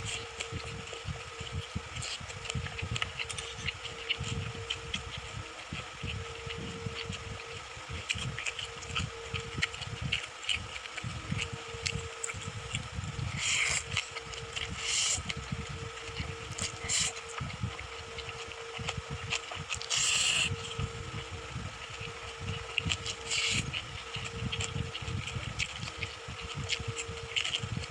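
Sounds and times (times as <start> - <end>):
chewing and mouth clicks: 0.0 - 27.9
low hum: 0.0 - 27.9
slurping or crunching: 8.0 - 21.4, 22.0 - 27.9.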